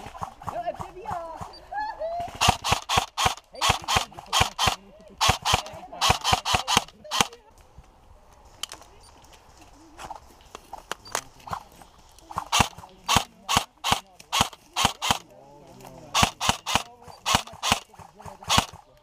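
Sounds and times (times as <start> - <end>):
airsoft gun shots: 2.3 - 7.4, 12.3 - 15.2, 16.1 - 18.8.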